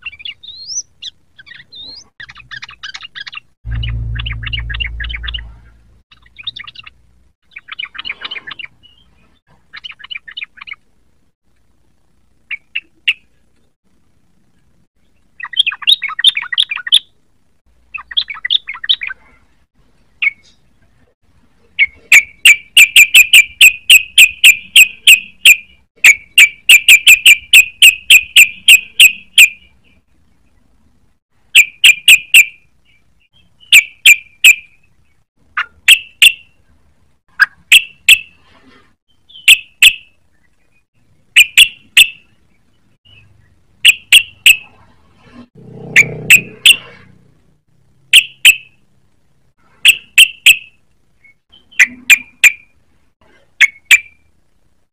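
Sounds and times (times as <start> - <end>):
bulbul singing: 0.0 - 9.1, 21.8 - 29.9, 35.9 - 36.6, 41.4 - 42.4, 43.0 - 44.7, 48.1 - 48.8.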